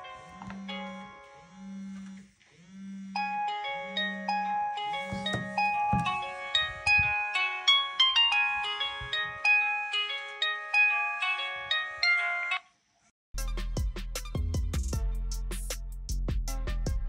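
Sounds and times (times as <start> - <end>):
chiming phone ringtone: 3.2 - 12.7
phone tune with bass and drums: 4.1 - 11.3.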